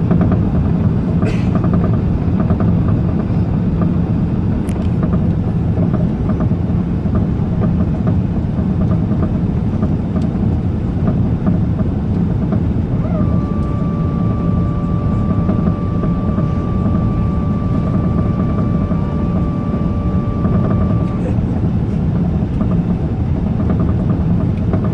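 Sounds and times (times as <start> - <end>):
aircraft low rumble: 0.0 - 24.9
steady high whine: 9.3 - 24.9.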